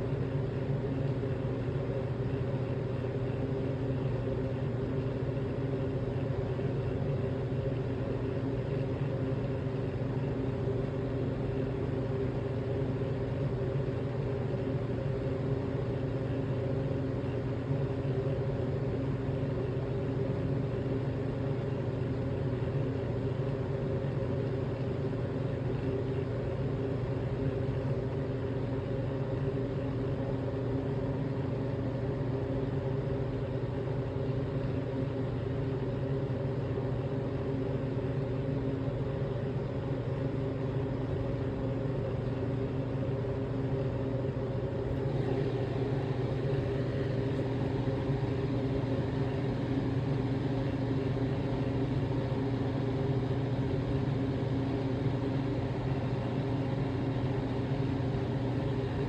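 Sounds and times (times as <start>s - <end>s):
low mechanical drone: 44.1s - 52.3s.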